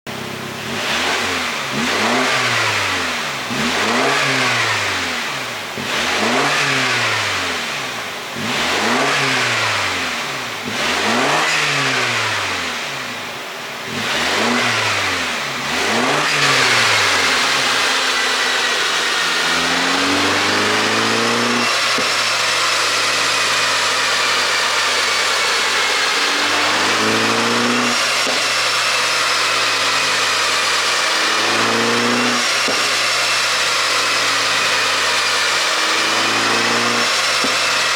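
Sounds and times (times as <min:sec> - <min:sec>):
car engine revving: 0:00.0 - 0:37.9
exhaust crackles: 0:13.8 - 0:37.9.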